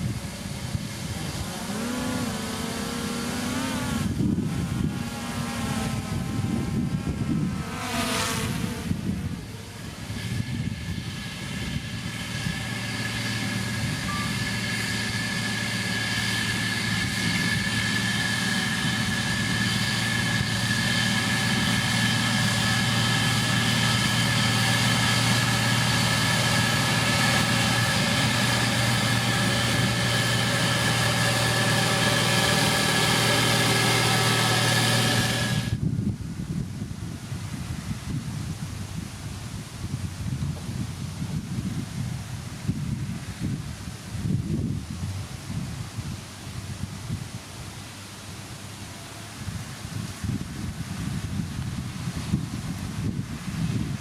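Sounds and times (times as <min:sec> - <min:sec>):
heavy machine engine running: 0:00.0 - 0:07.5, 0:08.9 - 0:35.9.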